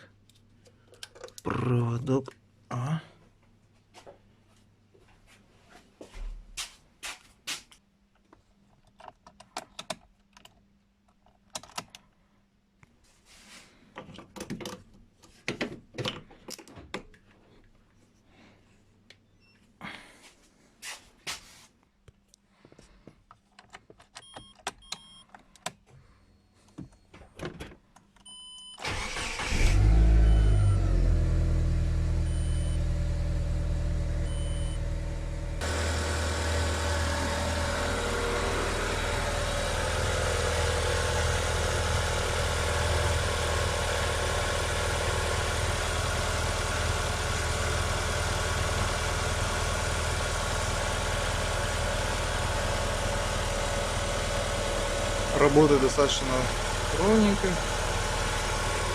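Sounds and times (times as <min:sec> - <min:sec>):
engine cranking and idling: 0:28.8 - 0:58.9.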